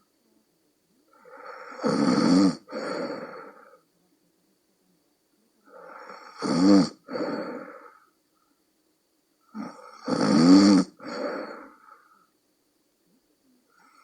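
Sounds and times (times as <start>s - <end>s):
person snoring: 1.1s - 3.8s, 5.7s - 8.1s, 9.5s - 12.3s.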